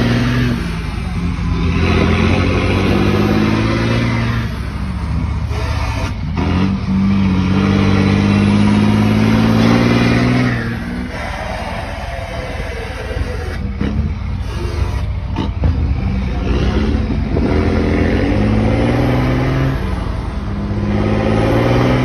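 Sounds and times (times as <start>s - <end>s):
diesel truck engine under load: 0.0s - 22.0s.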